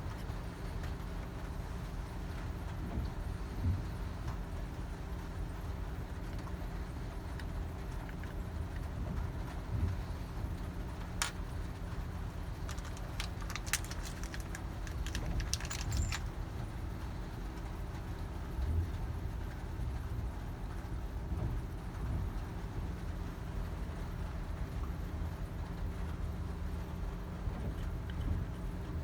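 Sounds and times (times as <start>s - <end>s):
metal items clicking and jingling: 7.8s - 8.9s, 11.1s - 11.6s, 12.4s - 16.5s.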